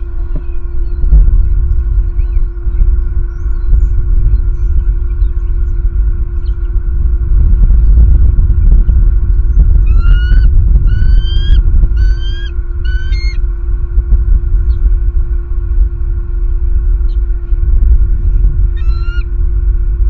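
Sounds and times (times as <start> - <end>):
steady hum: 0.0 - 20.0
wind rumble on microphone: 0.0 - 20.0
eagle high-pitched calls: 9.8 - 13.4, 18.7 - 19.3.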